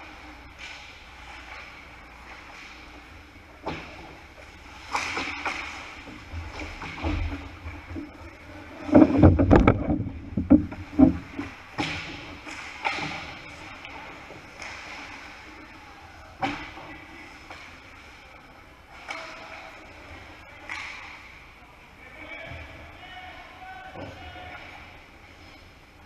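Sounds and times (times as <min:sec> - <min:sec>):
loud clattering knocks: 0:08.9 - 0:12.2.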